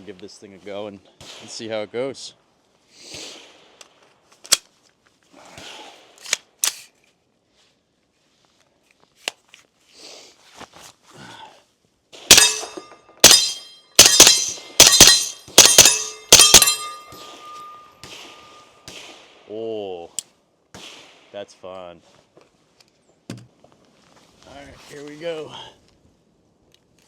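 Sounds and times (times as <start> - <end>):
gun handling clicks: 3.8 - 4.7, 6.2 - 7.0
suppressed gunshots: 12.2 - 19.4, 20.7 - 21.3
bullets ringing off steel targets: 12.3 - 19.0.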